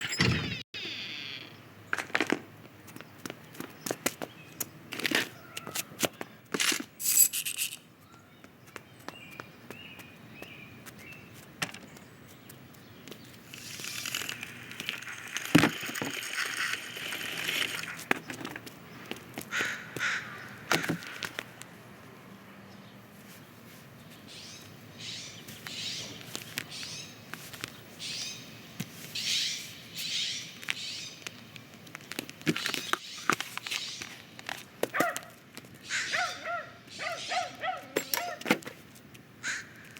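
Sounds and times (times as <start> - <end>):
faint bird chirps: 0.0 - 1.6.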